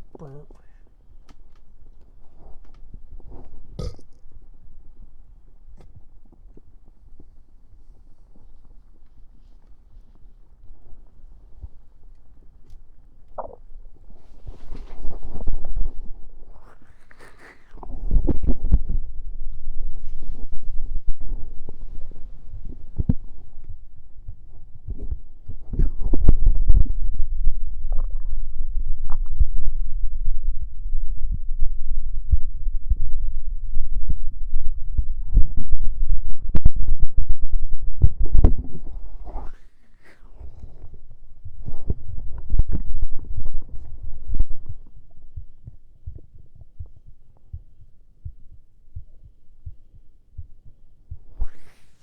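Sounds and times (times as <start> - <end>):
stomach gurgling: 2.4 - 4.4, 12.7 - 30.3
heartbeat thuds: 18.0 - 39.4, 40.3 - 51.6.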